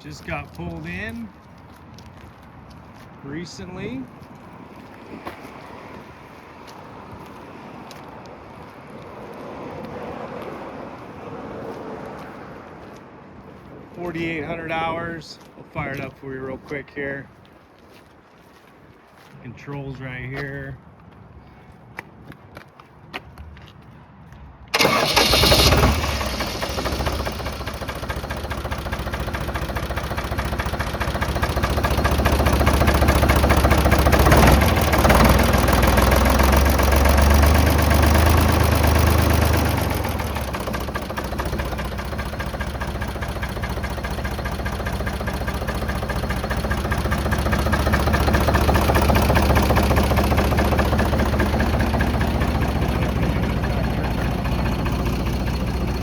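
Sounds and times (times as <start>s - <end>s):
diesel engine starting and running: 0.0s - 2.3s, 24.7s - 56.0s.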